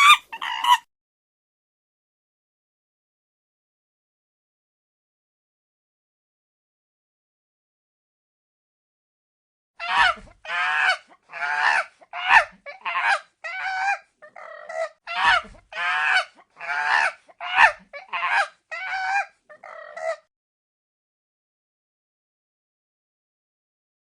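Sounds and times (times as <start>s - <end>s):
chimpanzee calls: 0.0s - 0.9s, 9.8s - 20.3s.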